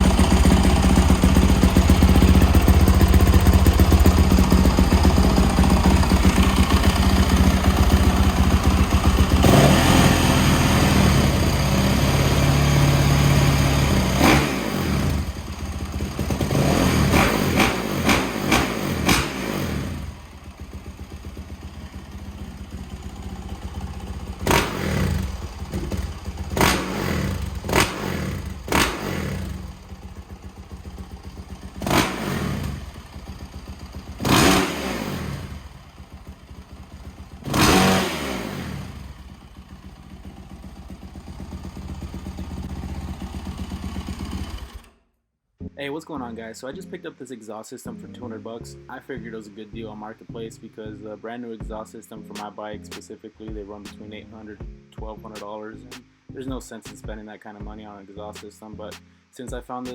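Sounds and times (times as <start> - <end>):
dirt bike engine revving: 0.0 - 45.0.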